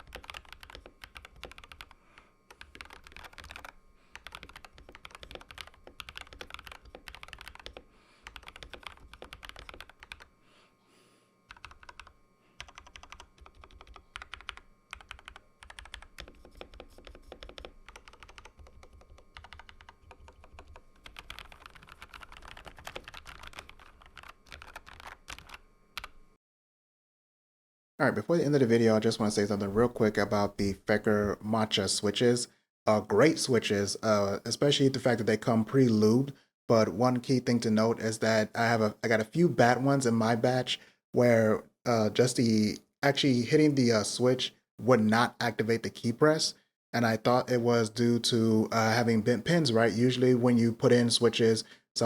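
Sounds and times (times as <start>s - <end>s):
mechanical keyboard typing: 0.0s - 10.3s, 11.5s - 26.2s.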